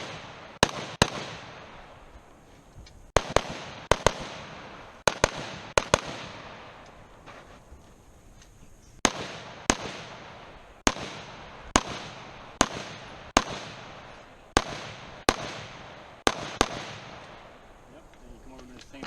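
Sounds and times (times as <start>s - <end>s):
rifle shots with echo: 0.0s - 2.1s, 3.2s - 7.4s, 9.0s - 17.8s.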